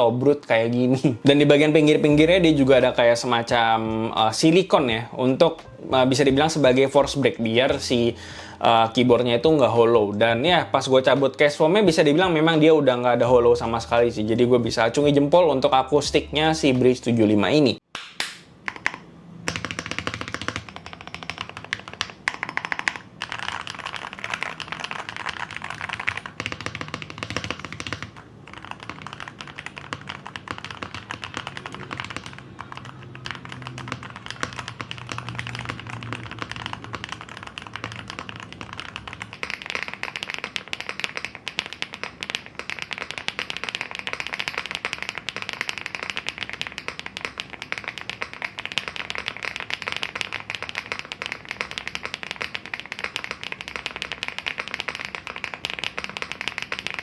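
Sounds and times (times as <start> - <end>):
keyboard typing: 18.7 - 57.0.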